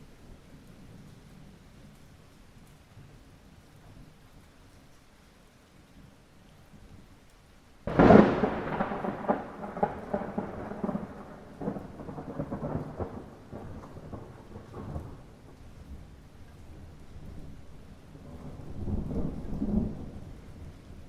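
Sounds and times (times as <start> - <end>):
light rain hissing: 0.0 - 21.0
close thunderclap rolling: 7.8 - 15.6, 18.2 - 21.0.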